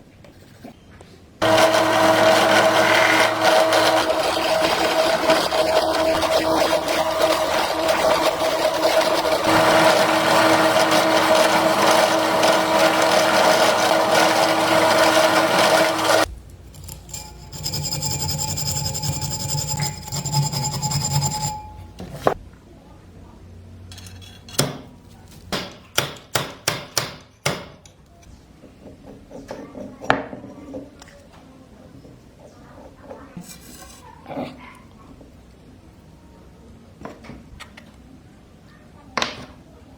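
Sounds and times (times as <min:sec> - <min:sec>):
power tool grinding a blade: 0:01.4 - 0:22.0
quieter machine sound: 0:01.4 - 0:22.2.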